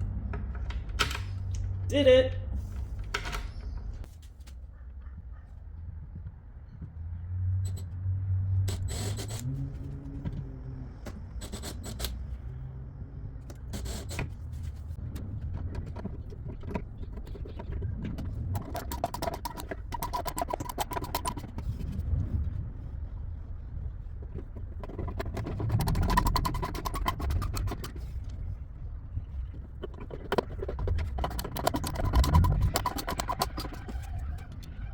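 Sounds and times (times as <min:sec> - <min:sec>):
rapid metallic clicks: 0:15.0 - 0:22.0, 0:24.0 - 0:34.8
scraping on a lock: 0:15.1 - 0:22.0, 0:24.2 - 0:28.6, 0:29.3 - 0:34.8.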